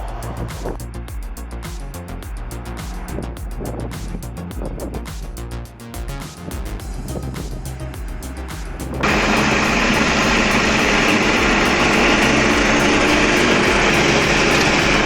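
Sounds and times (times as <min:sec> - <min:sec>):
diesel engine running under load: 0:09.0 - 0:15.0.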